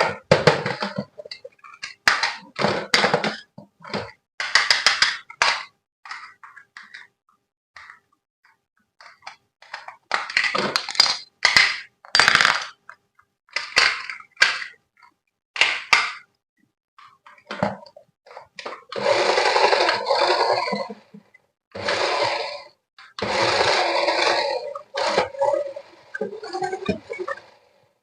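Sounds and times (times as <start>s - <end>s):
plastic toy parts clacking: 4.4s - 7.1s, 9.0s - 16.2s.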